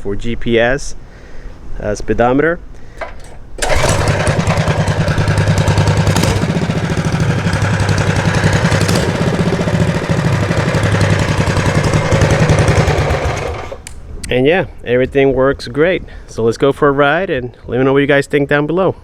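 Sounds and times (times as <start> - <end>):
small engine running steadily: 3.6 - 13.8.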